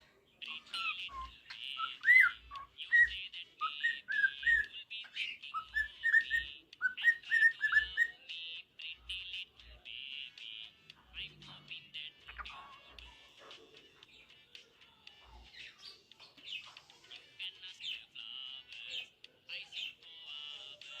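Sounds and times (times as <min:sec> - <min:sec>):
cockatiel chirping: 0:00.4 - 0:10.7, 0:12.2 - 0:14.3.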